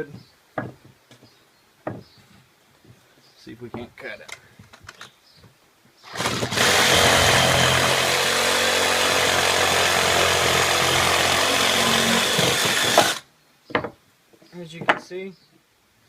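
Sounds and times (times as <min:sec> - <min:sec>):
reciprocating saw cutting wood: 0:06.0 - 0:13.2.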